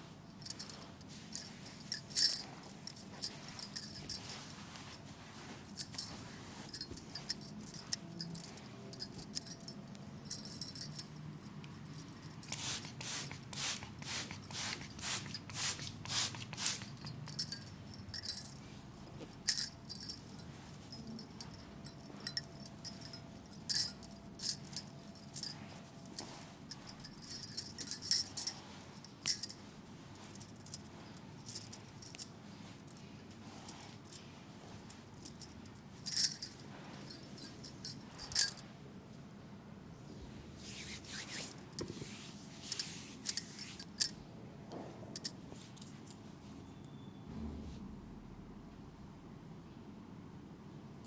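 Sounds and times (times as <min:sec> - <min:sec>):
soft rubbing sounds: 0:00.0 - 0:11.1, 0:11.9 - 0:38.6, 0:40.5 - 0:44.2
metallic jingling and clinking: 0:00.3 - 0:13.4, 0:14.3 - 0:38.7, 0:42.7 - 0:44.2, 0:45.2 - 0:45.4.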